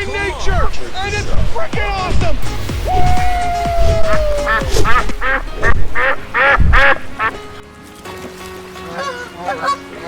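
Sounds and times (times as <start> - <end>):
geese honking: 2.9 - 7.6, 8.8 - 10.0.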